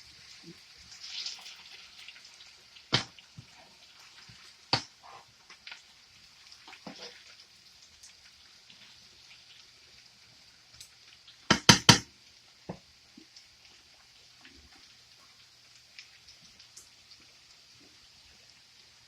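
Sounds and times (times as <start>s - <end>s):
food sizzling in frying pan: 0.0s - 19.0s
sharp knocks: 11.5s - 12.0s.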